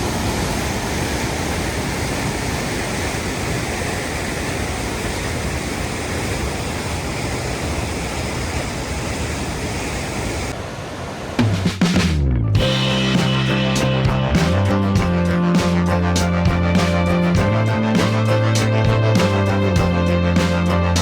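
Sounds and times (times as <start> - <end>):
small waterfall rushing: 0.0 - 11.7
music: 11.6 - 21.0.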